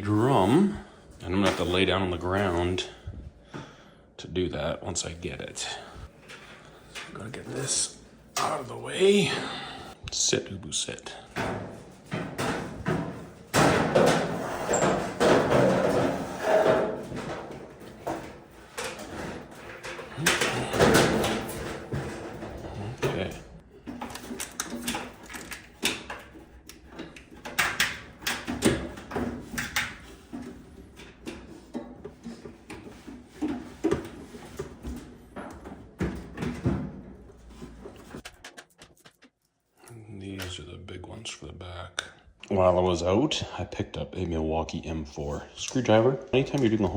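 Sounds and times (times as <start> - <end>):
dryer parts knocking and scraping: 0.0 - 3.8, 4.9 - 10.0, 11.1 - 39.3.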